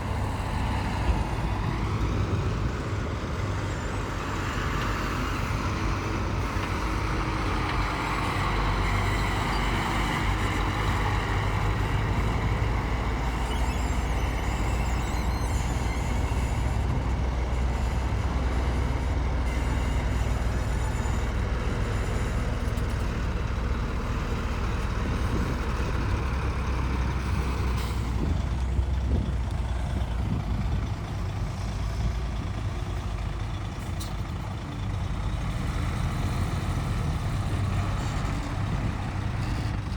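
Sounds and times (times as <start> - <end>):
heavy diesel machinery rumbling: 0.0 - 39.9.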